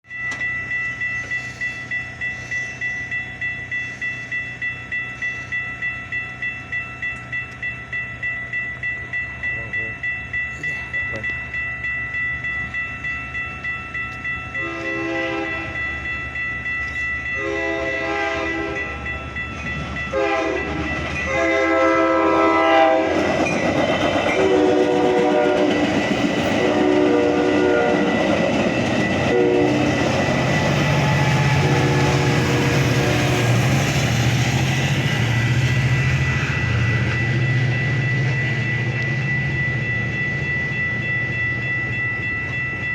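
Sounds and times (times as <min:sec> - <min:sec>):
crossing warning bell ringing: 0:00.0 - 0:42.9
train rumble and wheel clatter: 0:00.1 - 0:42.9
train horn blasts: 0:14.6 - 0:15.8, 0:17.4 - 0:19.0, 0:20.1 - 0:23.3, 0:24.4 - 0:25.9, 0:26.6 - 0:28.2, 0:29.3 - 0:30.0, 0:31.2 - 0:33.5.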